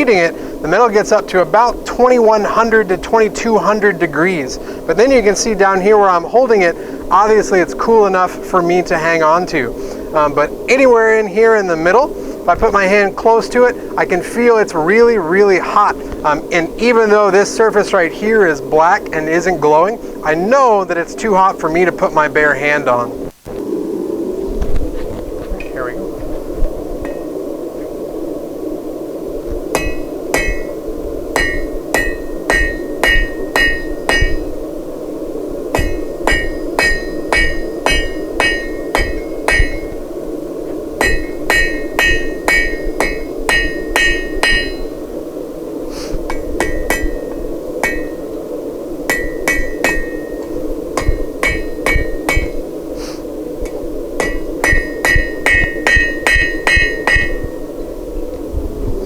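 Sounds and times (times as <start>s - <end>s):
low rushing noise: 0.0s - 59.0s
hammer ringing on anvil: 29.8s - 30.8s, 31.4s - 34.5s, 35.8s - 40.0s, 41.0s - 45.0s, 46.3s - 48.3s, 49.1s - 52.6s, 54.2s - 57.6s.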